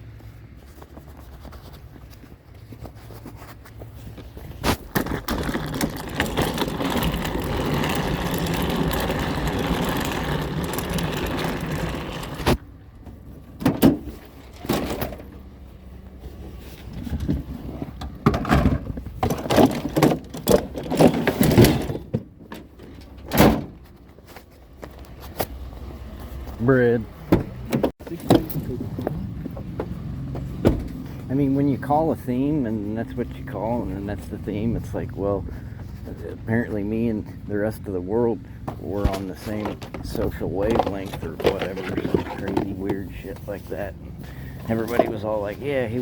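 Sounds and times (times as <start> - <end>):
knocks and clunks: 4.6 - 15.5, 16.9 - 24.2, 27.2 - 31.3, 38.6 - 43.5
vehicle engine running: 5.6 - 13.5, 28.2 - 46.0.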